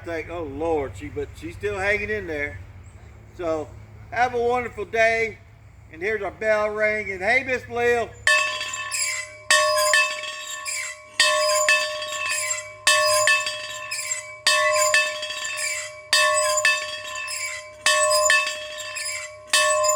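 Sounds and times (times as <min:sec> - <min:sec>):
bell ringing in paired strokes: 0:08.3 - 0:19.9.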